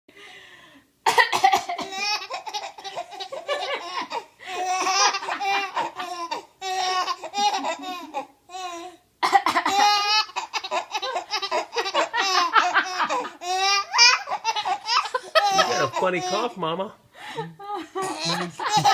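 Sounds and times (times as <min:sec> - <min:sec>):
young child laughing: 0:01.7 - 0:08.3, 0:09.4 - 0:16.5, 0:17.8 - 0:18.9.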